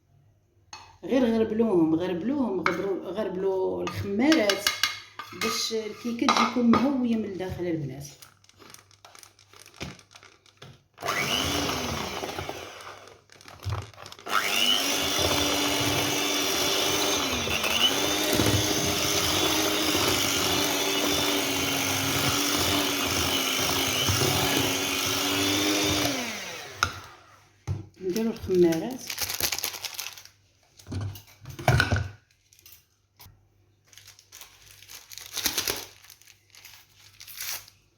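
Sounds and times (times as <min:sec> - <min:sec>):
electric mixer motor whine: 0:11.0 - 0:27.5.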